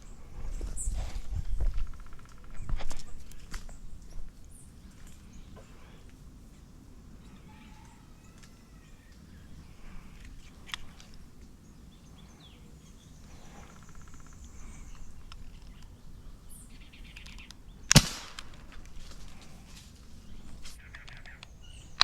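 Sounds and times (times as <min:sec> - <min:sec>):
birds chirping: 0:00.0 - 0:22.0
air rifle shot: 0:17.9 - 0:19.4.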